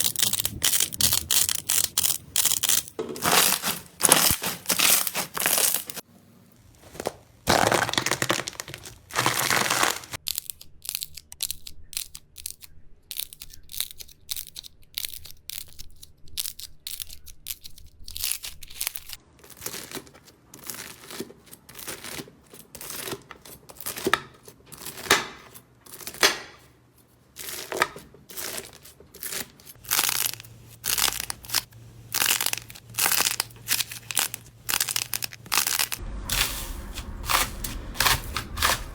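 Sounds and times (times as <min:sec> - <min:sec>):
slime crackling and popping: 0:00.0 - 0:06.0, 0:06.8 - 0:12.5, 0:29.8 - 0:38.9.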